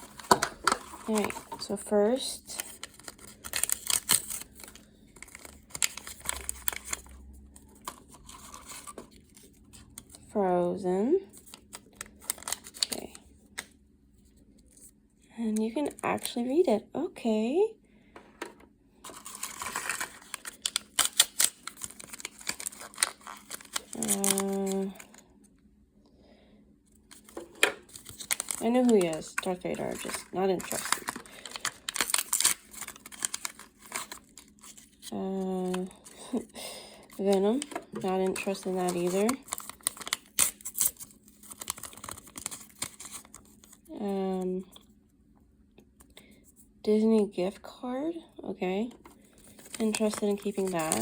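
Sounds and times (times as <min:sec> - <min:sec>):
plastic wrapper crinkling and tearing: 0:00.0 - 0:10.3, 0:11.3 - 0:13.7, 0:19.0 - 0:25.2, 0:27.1 - 0:43.9, 0:49.1 - 0:51.0.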